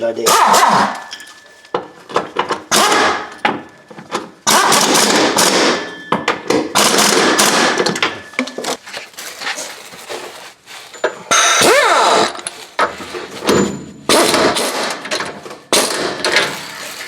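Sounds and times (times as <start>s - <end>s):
impact wrench hammering: 4.4s - 8.2s, 13.4s - 16.5s.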